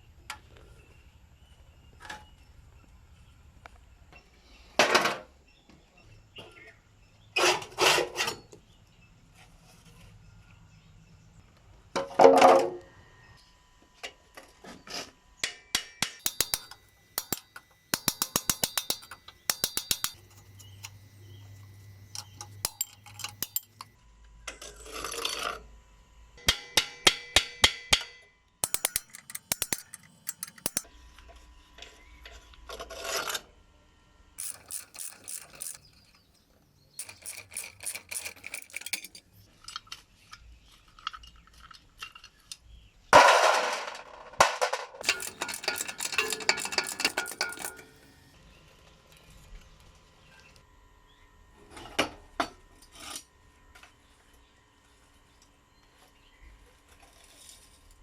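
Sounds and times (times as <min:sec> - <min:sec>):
rapid clicking of hand tool: 0:16.0 - 0:23.9, 0:28.6 - 0:30.9, 0:34.4 - 0:36.4, 0:37.0 - 0:39.3, 0:45.0 - 0:48.1
scraping on metal: 0:28.6 - 0:30.9, 0:34.4 - 0:36.3, 0:37.0 - 0:39.3, 0:45.0 - 0:48.1.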